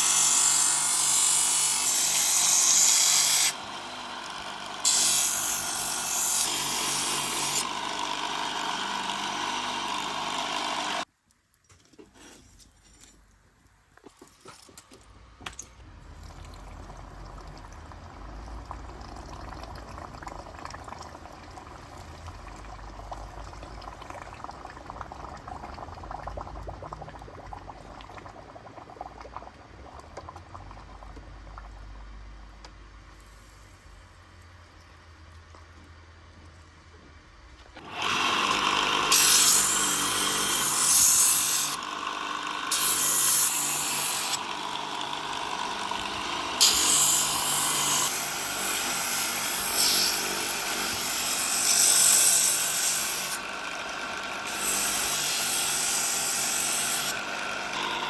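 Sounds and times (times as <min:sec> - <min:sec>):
power tool running: 0:00.0 - 0:11.1, 0:37.8 - 0:58.0
crackling noise with low rumble: 0:15.9 - 0:37.8.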